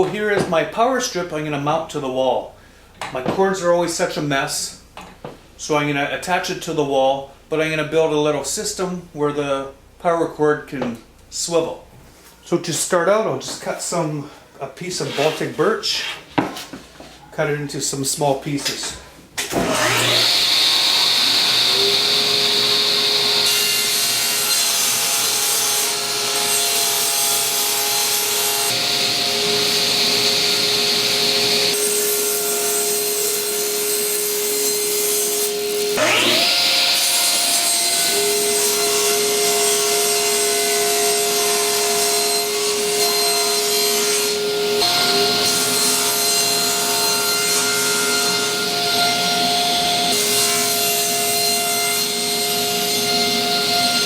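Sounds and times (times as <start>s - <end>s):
power saw cutting plywood: 19.5s - 54.0s.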